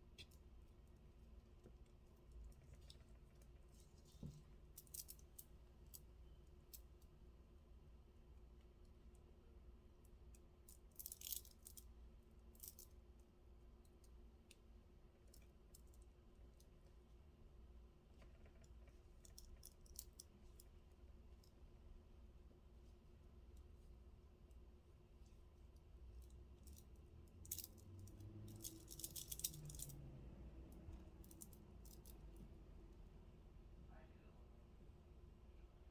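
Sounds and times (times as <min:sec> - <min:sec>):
low room hum: 0:00.0 - 0:35.9
stone beads clicking: 0:28.5 - 0:29.9.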